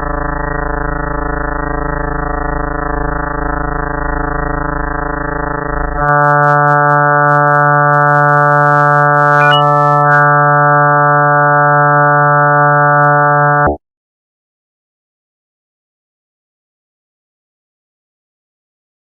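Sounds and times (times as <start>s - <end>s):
electronic drone: 4.6s - 13.7s.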